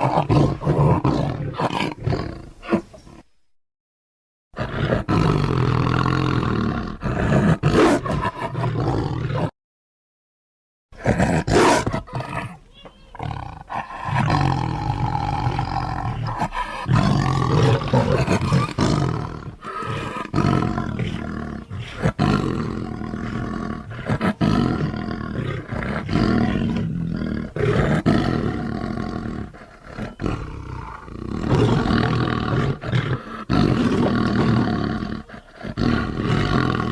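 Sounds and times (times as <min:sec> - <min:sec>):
big cat roaring: 0:11.0 - 0:36.9.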